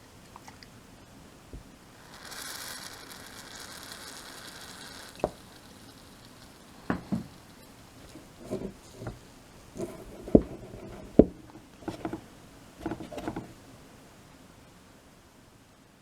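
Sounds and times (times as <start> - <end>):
aerosol spray can hissing: 2.0 - 9.2.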